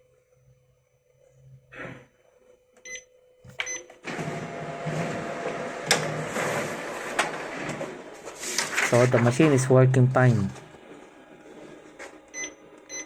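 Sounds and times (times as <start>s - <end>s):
copier whirring: 3.6s - 13.0s
control panel beeps: 12.4s - 13.0s.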